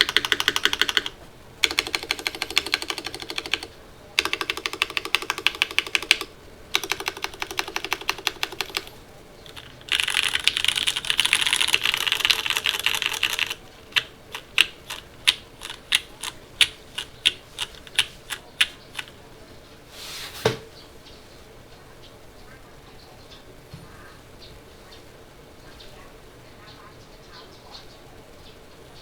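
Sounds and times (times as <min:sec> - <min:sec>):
mechanical keyboard typing: 0:00.0 - 0:19.2.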